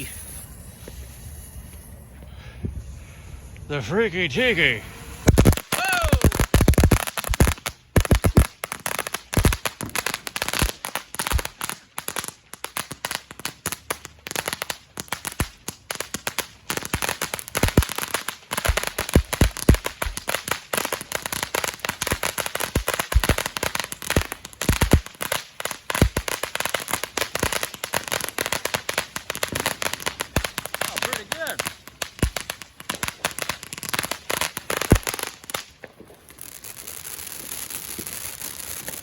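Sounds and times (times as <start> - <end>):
firework crackling: 0.0 - 39.0
firework pops and bangs: 5.1 - 39.0.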